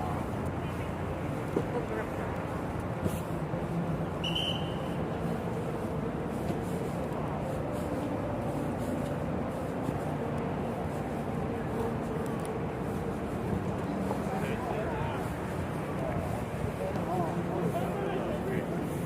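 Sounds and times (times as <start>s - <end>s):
crowd noise: 0.0s - 19.0s
traffic: 0.0s - 19.0s.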